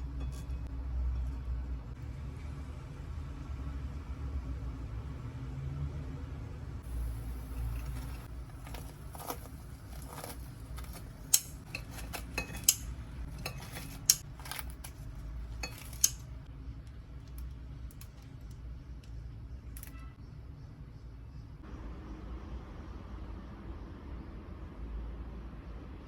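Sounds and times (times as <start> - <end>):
steady low hum: 6.3 - 26.0
utensils clinking and clattering: 6.9 - 16.3.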